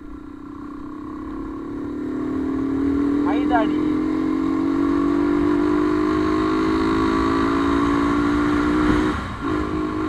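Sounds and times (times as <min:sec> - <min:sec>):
motorcycle engine droning: 0:00.0 - 0:10.0
wind noise: 0:08.5 - 0:10.0.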